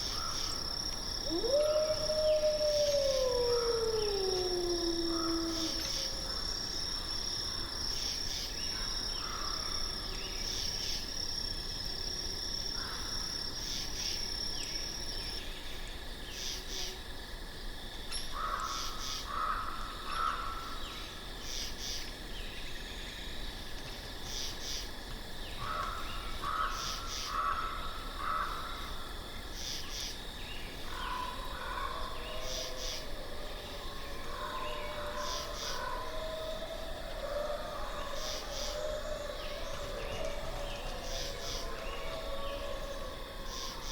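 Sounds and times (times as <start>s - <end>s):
insects trilling: 0.0s - 43.9s.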